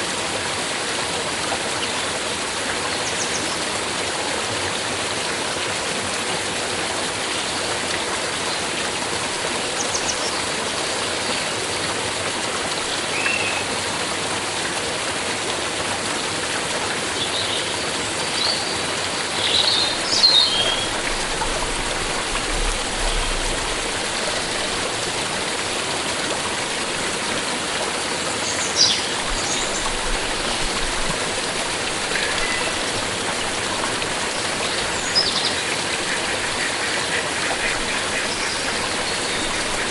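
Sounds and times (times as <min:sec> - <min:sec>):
stream flowing and splashing: 0:00.0 - 0:39.9
birds chirping: 0:19.4 - 0:21.5.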